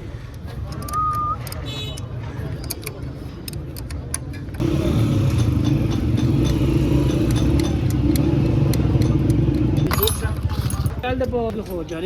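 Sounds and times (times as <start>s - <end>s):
motorcycle engine running: 4.6s - 11.4s.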